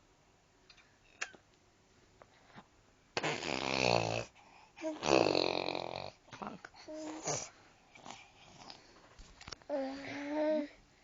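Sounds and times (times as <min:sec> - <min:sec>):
toddler making raspy sounds: 0:04.8 - 0:06.1.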